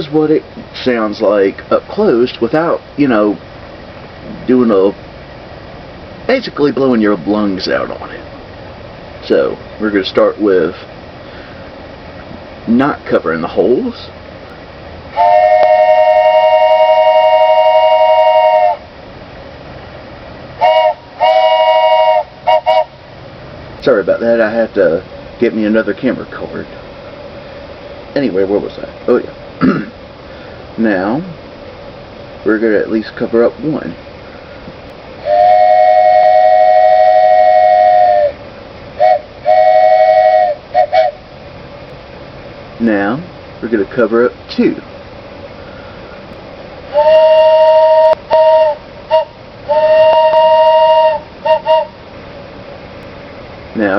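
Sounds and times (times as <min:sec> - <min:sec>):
wooden train whistle blasts: 0:15.2 - 0:18.9, 0:20.6 - 0:23.0, 0:35.2 - 0:38.4, 0:39.0 - 0:41.2, 0:46.9 - 0:52.0.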